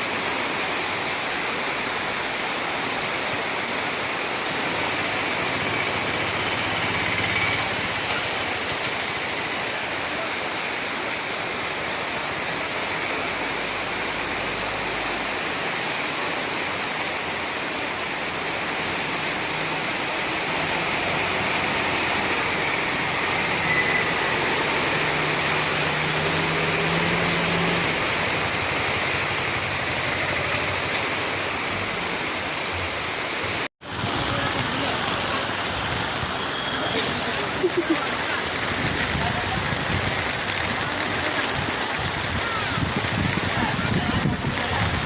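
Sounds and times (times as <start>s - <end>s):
floodwater rushing: 0.0s - 45.0s.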